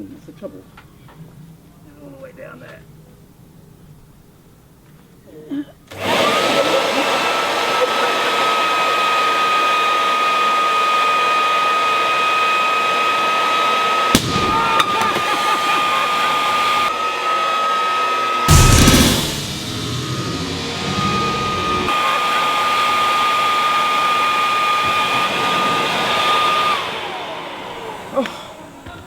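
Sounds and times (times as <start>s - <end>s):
electric air blower whining: 5.9s - 29.0s.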